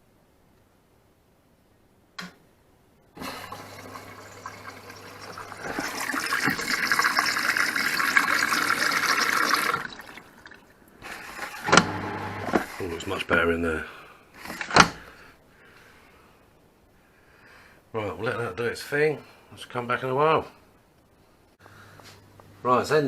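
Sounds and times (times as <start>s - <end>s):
water rushing into washing machine: 3.2s - 12.8s.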